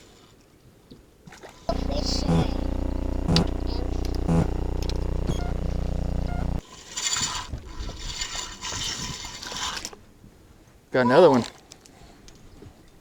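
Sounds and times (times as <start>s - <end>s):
mechanical buzzing drone with ticking: 1.7s - 6.6s.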